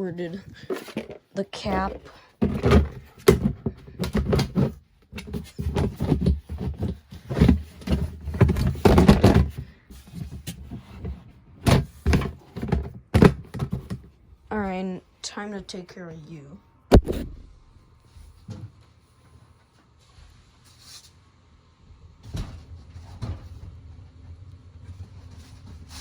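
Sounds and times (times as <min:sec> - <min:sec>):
objects knocking and clattering: 0:00.3 - 0:14.2.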